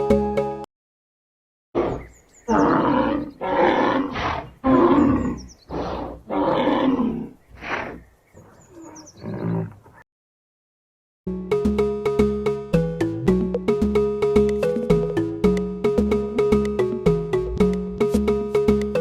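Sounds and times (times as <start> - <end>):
lion roaring: 1.8 - 9.8
faint bird chirps: 7.4 - 9.6.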